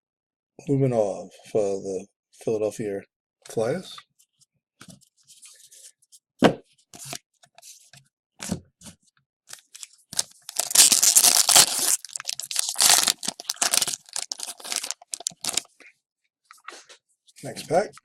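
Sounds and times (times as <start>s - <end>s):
cards being handled: 9.5s - 15.7s
wrapper being torn open: 9.5s - 15.7s.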